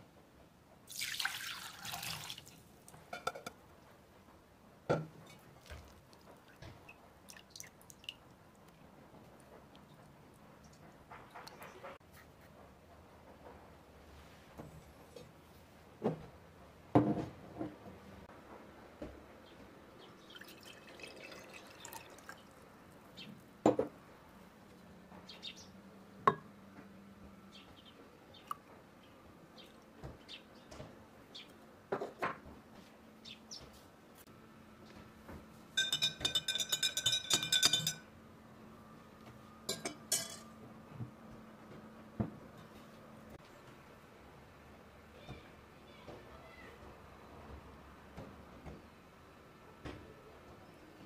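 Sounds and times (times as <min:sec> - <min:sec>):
dishware knocks and clinks: 0:03.1 - 0:03.6, 0:35.8 - 0:38.1, 0:39.7 - 0:40.5
rapid ringing glass clinks: 0:35.8 - 0:38.1.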